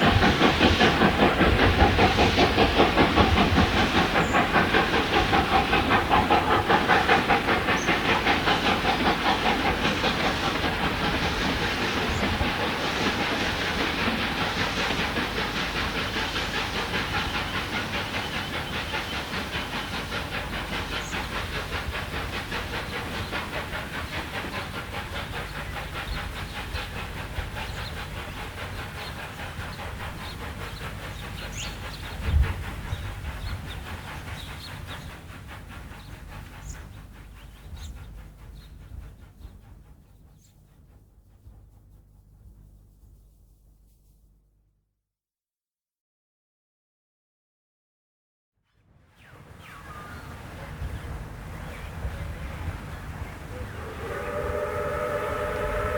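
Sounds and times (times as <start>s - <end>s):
steam hiss: 0.0s - 40.5s, 49.2s - 55.9s
steam locomotive exhaust chuffs: 0.0s - 44.2s, 49.2s - 55.9s.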